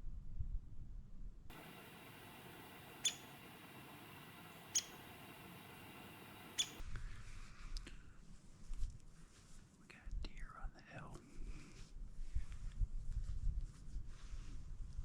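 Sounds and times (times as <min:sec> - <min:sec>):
faint steady hiss: 0:01.5 - 0:08.0.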